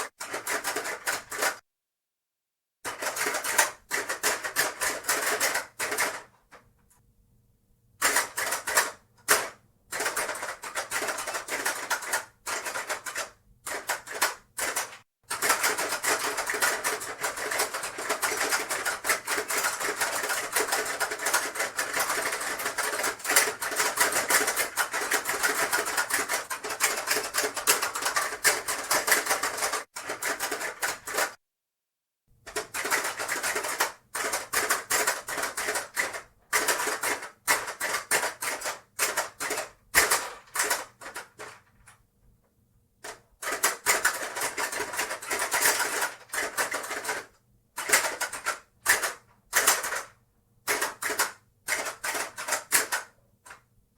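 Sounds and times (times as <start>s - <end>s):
plastic game pieces clacking: 10.0s - 31.3s, 32.5s - 41.6s, 43.0s - 50.1s, 50.7s - 53.6s.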